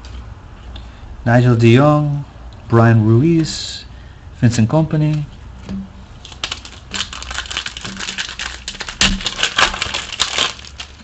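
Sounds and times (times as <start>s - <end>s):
foil wrapper crinkling and tearing: 6.2s - 11.0s.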